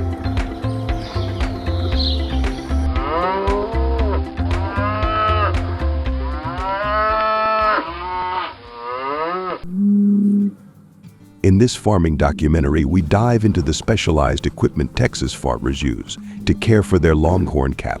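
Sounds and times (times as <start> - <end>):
background music with steady beat: 0.0 - 8.8, 10.4 - 18.0
cattle mooing: 2.9 - 5.6, 6.3 - 10.6.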